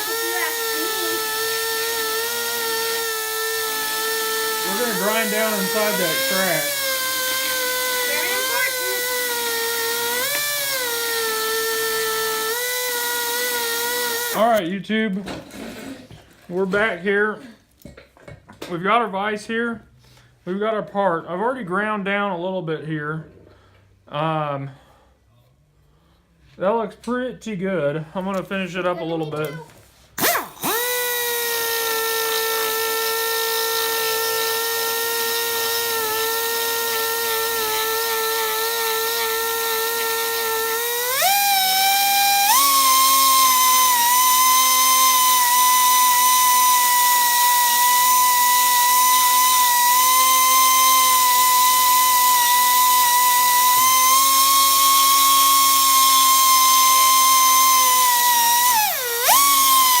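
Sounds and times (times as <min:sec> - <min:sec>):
rotary tool grinding steel: 0:00.0 - 0:14.6, 0:30.2 - 1:00.0.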